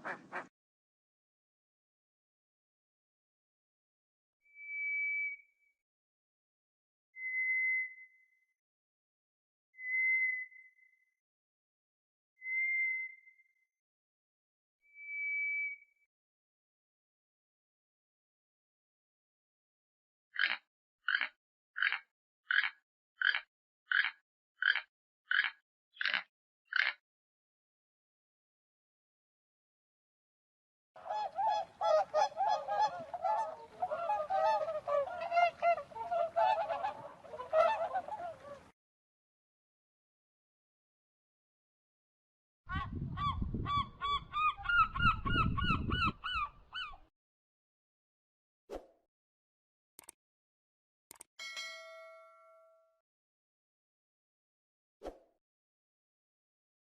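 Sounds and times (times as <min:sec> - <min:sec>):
thrush whistled song: 0:04.5 - 0:05.8, 0:07.2 - 0:08.6, 0:09.8 - 0:11.2, 0:12.4 - 0:13.7, 0:14.9 - 0:16.1
waterfowl flock honking: 0:31.0 - 0:38.7.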